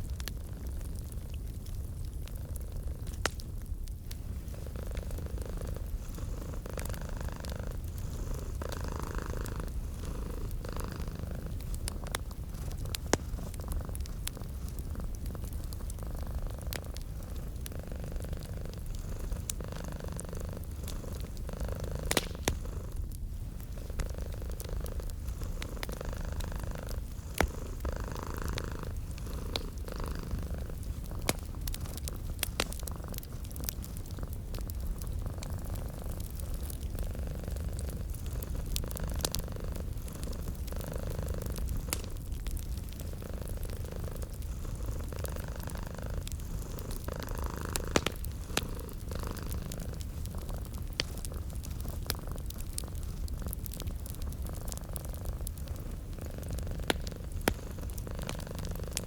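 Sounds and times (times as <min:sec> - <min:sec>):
cat purring: 0:00.0 - 0:59.0
sharp pops from fire: 0:00.0 - 0:59.0
wood fire crackling: 0:00.0 - 0:59.0.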